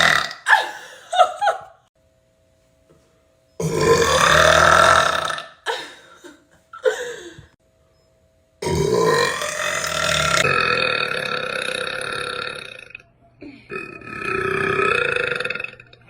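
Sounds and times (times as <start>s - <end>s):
woman burping: 0.0s - 1.3s, 3.6s - 7.4s, 8.6s - 15.9s.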